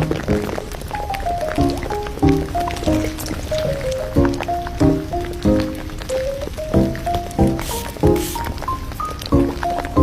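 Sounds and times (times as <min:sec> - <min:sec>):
music with steady beat: 0:04.1 - 0:10.0.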